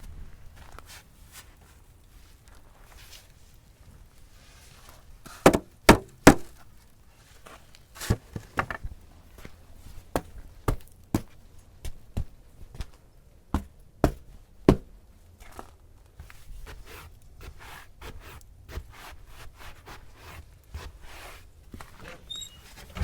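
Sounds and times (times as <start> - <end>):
snow shovel knocking: 5.3 - 6.6.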